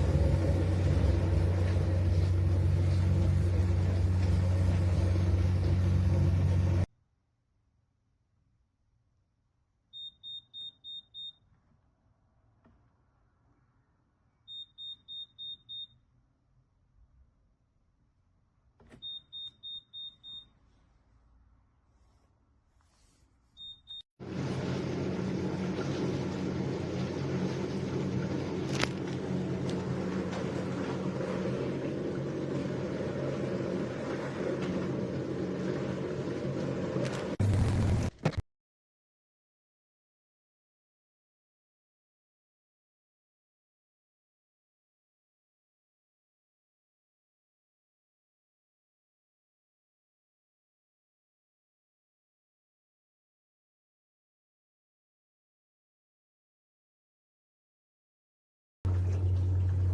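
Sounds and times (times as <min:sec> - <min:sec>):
dishwasher motor hum: 0:00.0 - 0:06.9, 0:24.2 - 0:38.3, 0:58.9 - 0:59.9
dishwasher short high beeps: 0:10.0 - 0:11.4, 0:14.5 - 0:16.0, 0:19.0 - 0:20.5, 0:23.6 - 0:24.0.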